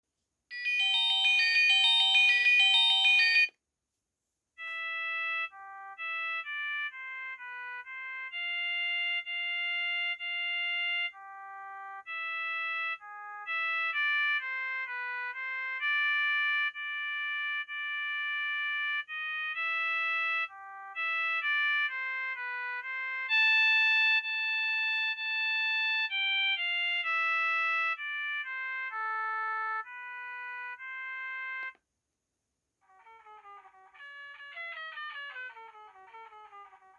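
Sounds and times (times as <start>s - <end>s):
synthesized phone ringtone melody: 0.5s - 3.6s.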